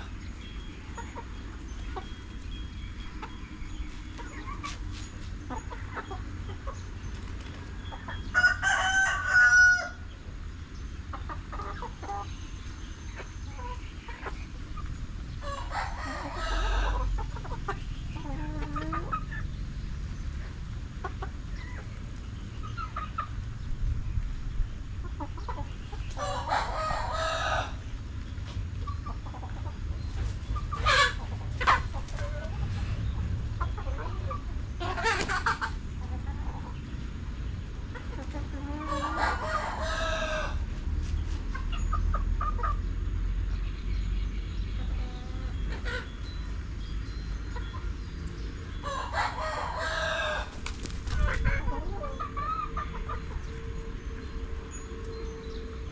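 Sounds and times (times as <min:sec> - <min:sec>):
chickens clucking: 0:00.0 - 0:55.9
roosters crowing: 0:07.6 - 0:12.6, 0:15.3 - 0:19.4, 0:25.4 - 0:28.0, 0:30.6 - 0:35.8, 0:38.4 - 0:41.0, 0:47.7 - 0:55.9.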